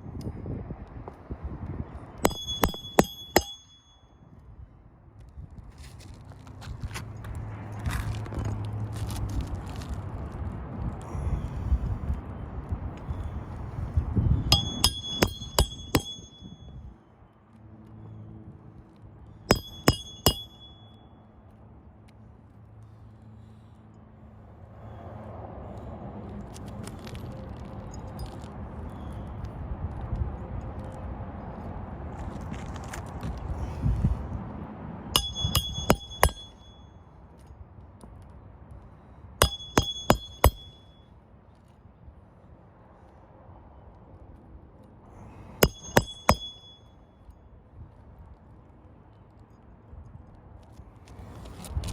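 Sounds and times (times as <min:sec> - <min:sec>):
hammer striking nail: 0:02.2 - 0:03.8, 0:14.5 - 0:16.5, 0:19.5 - 0:20.7, 0:35.2 - 0:36.7, 0:39.4 - 0:40.8, 0:45.6 - 0:46.8.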